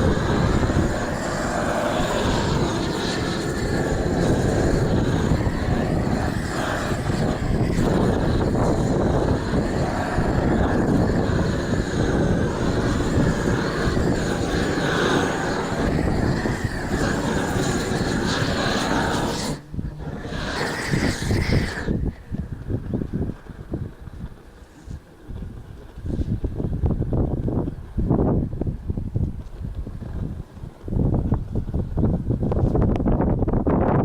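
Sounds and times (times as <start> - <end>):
propane torch roaring: 0.0 - 24.3.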